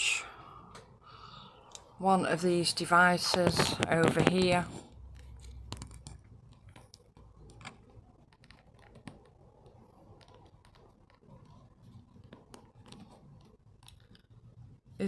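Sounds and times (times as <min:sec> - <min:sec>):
faint clicks and ticks: 0:03.3 - 0:15.0.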